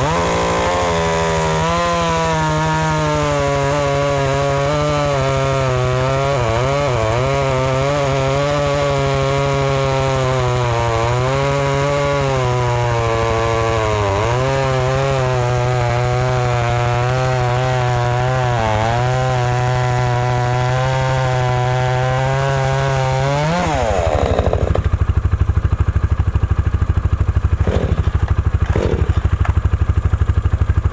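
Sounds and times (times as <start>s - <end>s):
chainsaw cutting wood: 0.0s - 30.9s
clatters: 27.6s - 29.7s.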